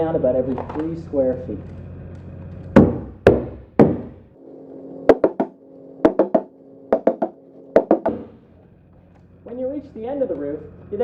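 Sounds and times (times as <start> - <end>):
hammer blows on wood: 5.1 - 8.4.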